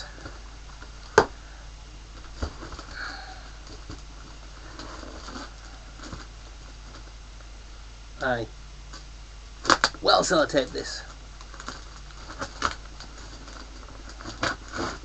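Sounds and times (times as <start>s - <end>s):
packaging rustling: 11.4s - 15.0s.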